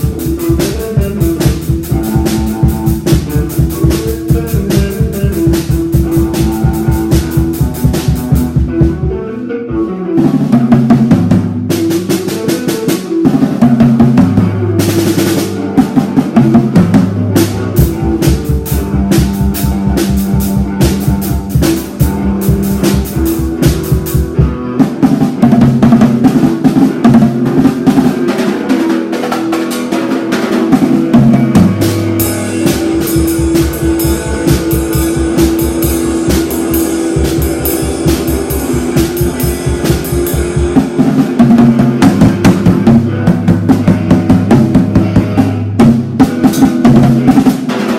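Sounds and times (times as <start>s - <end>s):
rock drum beat: 0.0s - 47.9s
sustained bass line: 31.1s - 47.3s.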